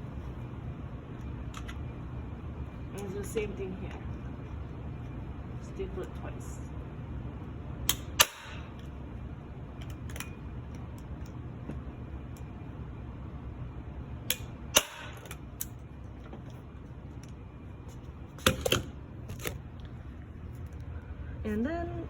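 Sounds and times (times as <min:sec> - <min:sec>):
staple gun snapping: 0:07.9 - 0:08.6, 0:14.3 - 0:15.7.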